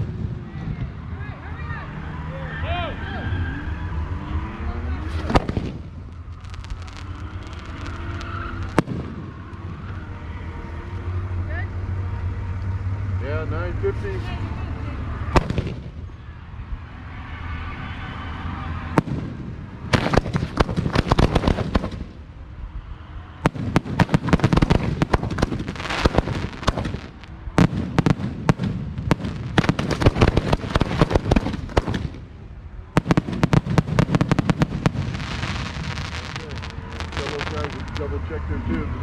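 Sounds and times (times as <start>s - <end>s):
fireworks cracks and bangs: 5.0s - 10.0s, 15.3s - 16.2s, 18.9s - 22.3s, 23.4s - 32.4s, 33.0s - 38.2s.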